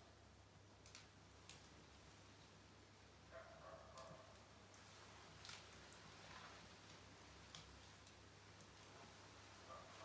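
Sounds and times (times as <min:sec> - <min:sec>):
wood fire crackles: 0:00.7 - 0:02.9, 0:04.7 - 0:08.9.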